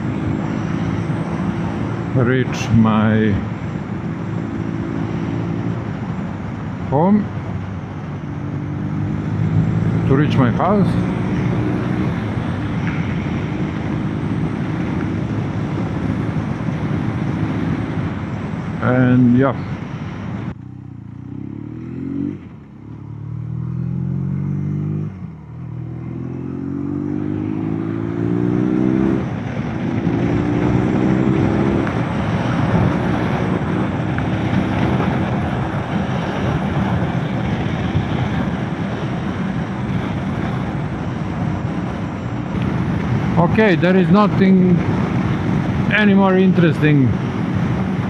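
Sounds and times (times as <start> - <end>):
wind rush on microphone: 0.0 - 20.6, 27.1 - 48.0
motorcycle engine accelerating: 8.1 - 19.0, 20.5 - 48.0.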